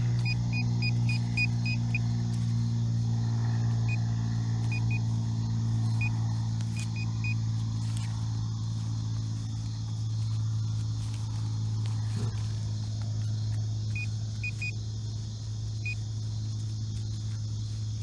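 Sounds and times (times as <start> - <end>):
metal detector beeps: 0.0 - 2.0, 3.8 - 5.1, 5.8 - 8.1, 13.9 - 14.8
steady low hum: 0.0 - 18.0.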